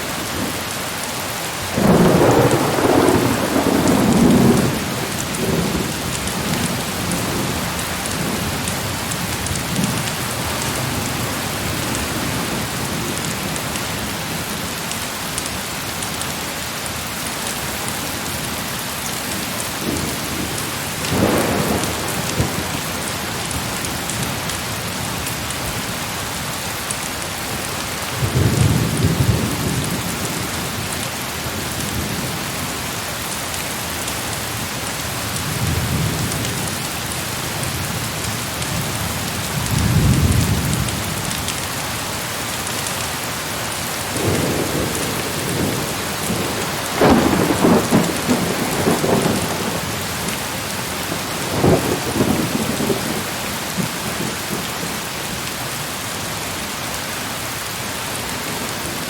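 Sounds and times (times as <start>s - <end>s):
heavy rain falling: 0.0s - 59.0s
thunder rolling: 1.8s - 8.6s, 19.8s - 22.8s, 44.1s - 50.4s, 51.0s - 54.3s.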